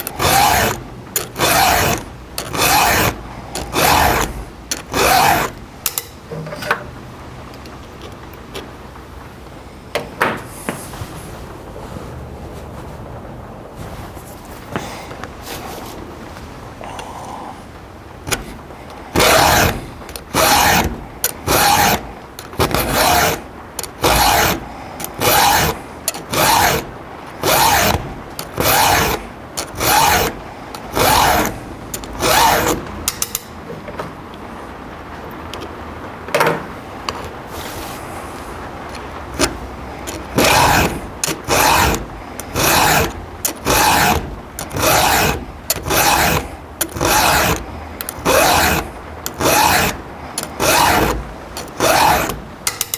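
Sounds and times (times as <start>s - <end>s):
file rasping on chain teeth: 0.0s - 6.1s, 18.3s - 33.5s, 38.9s - 52.9s.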